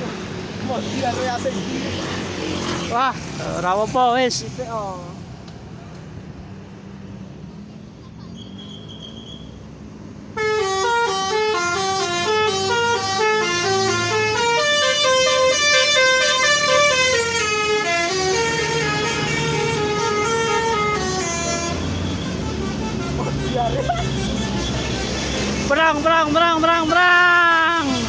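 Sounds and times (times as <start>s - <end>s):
bus musical horn playing tune: 10.4s - 25.6s.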